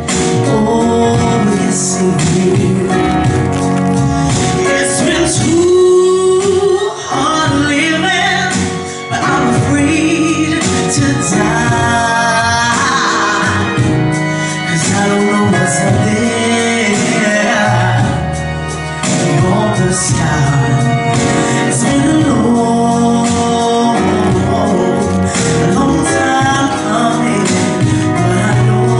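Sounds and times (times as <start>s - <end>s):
backing band bass and drums: 0.0s - 28.9s
woman singing soul: 0.2s - 3.4s, 4.3s - 18.4s, 19.0s - 28.9s.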